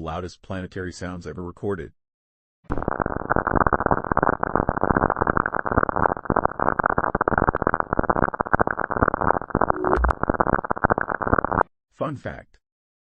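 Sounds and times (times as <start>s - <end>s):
muffled static crackle: 2.7s - 11.6s.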